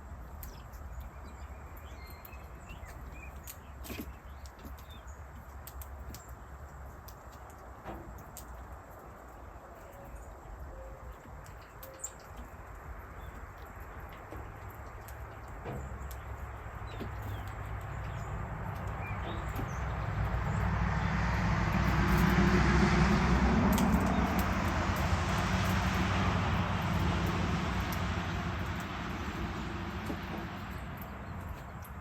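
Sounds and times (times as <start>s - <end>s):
small birds chirping: 0.2s - 7.8s, 8.4s - 32.0s
vehicle approaching: 13.2s - 32.0s
low rumble: 17.4s - 32.0s.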